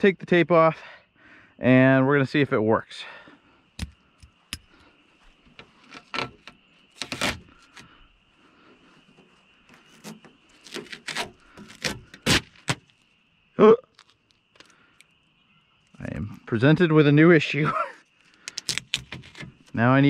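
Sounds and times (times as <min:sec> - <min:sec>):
tape ripping off glass: 0:05.8 - 0:07.8, 0:09.8 - 0:12.9, 0:18.5 - 0:19.7.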